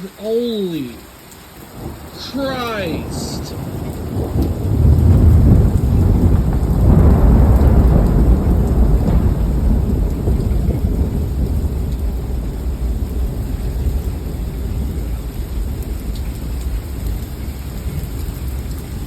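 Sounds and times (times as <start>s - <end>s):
heavy rain: 0.0s - 19.0s
loud thunder: 1.8s - 13.5s.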